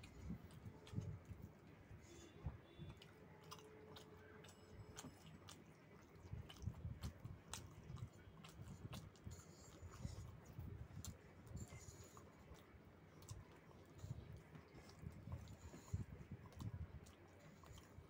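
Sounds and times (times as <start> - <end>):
person chewing food: 0.0 - 18.0.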